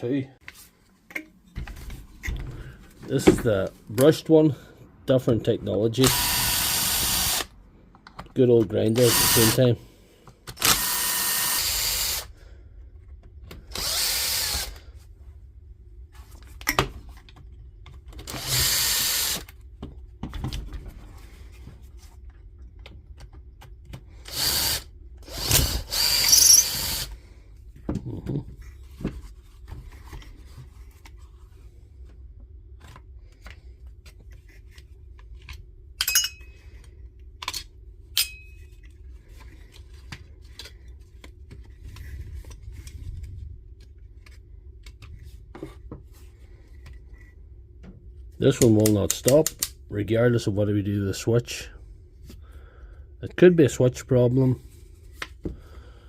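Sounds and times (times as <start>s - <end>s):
power tool motor bursts: 10.6s - 12.3s, 13.7s - 14.8s, 24.3s - 27.1s.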